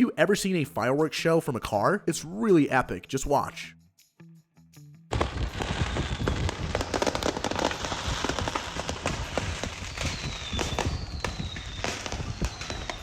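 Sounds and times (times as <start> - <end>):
fireworks crackling and banging: 5.1 - 13.0.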